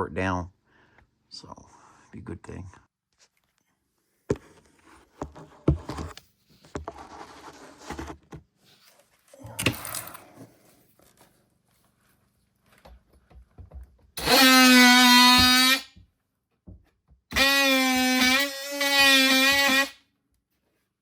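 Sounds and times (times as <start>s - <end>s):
knocks and scraping from handling: 4.3s - 11.3s
power tool buzzing: 14.2s - 15.9s, 17.3s - 20.0s.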